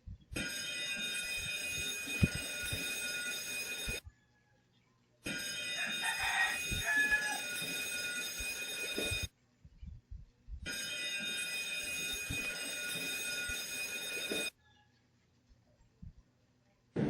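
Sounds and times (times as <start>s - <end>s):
electric alarm bell ringing: 0.4s - 4.0s, 5.3s - 9.3s, 10.7s - 14.5s.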